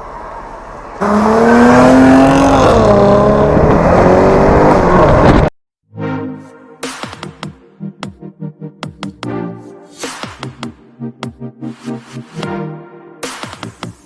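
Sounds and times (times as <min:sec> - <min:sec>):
car engine accelerating hard: 0:00.6 - 0:05.5.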